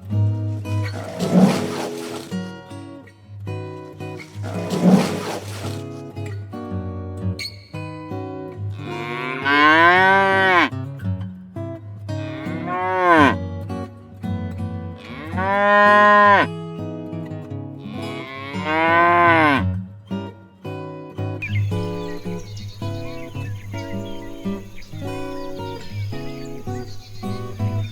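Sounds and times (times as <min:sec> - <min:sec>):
soft guitar music: 0:00.0 - 0:01.0, 0:02.3 - 0:04.3, 0:05.8 - 0:27.9
cow mooing: 0:08.8 - 0:10.7, 0:12.2 - 0:13.4, 0:15.0 - 0:16.5, 0:17.9 - 0:19.6.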